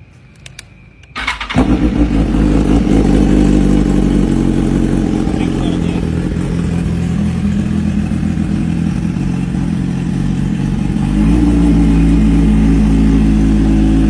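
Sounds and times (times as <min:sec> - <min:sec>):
motorcycle engine idling: 0:01.1 - 0:14.0.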